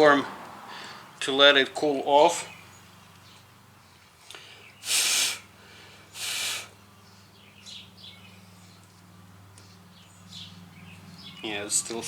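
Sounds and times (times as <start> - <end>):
puffs of breath hissing: 4.2 - 6.8.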